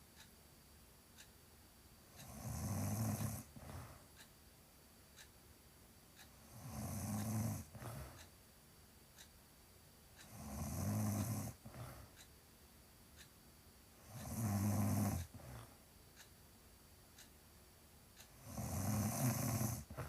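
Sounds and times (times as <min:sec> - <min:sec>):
woman snoring loudly: 0:02.2 - 0:03.5, 0:06.5 - 0:08.0, 0:10.3 - 0:11.6, 0:14.1 - 0:15.4, 0:18.4 - 0:20.0
soft breath: 0:03.6 - 0:04.2, 0:07.6 - 0:08.3, 0:11.6 - 0:12.3.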